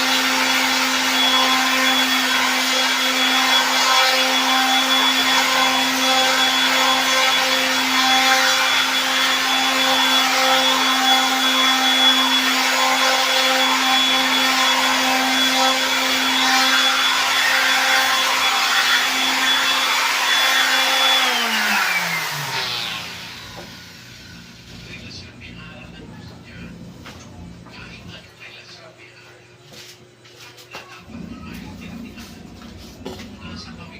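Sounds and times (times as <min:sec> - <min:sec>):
power tool motor whining: 0:00.0 - 0:25.0.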